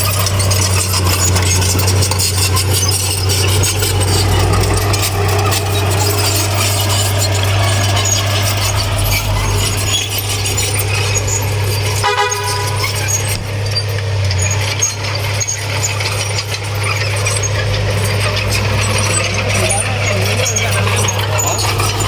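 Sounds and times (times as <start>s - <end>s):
diesel machinery droning: 0.0s - 22.0s
vehicle horn toot: 12.0s - 13.3s.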